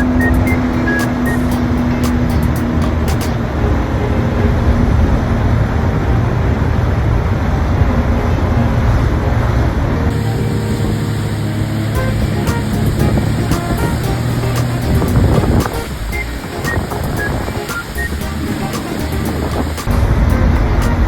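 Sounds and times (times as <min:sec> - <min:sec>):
jet ski engine running: 0:10.1 - 0:20.8.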